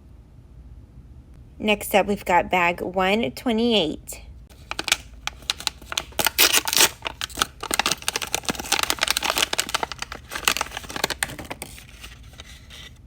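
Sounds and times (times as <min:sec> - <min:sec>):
plastic packet crinkling: 0:04.5 - 0:13.0.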